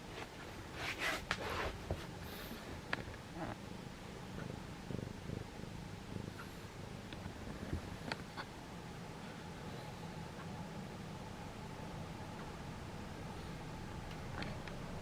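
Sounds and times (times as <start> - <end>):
cat purring: 0.5 - 10.4.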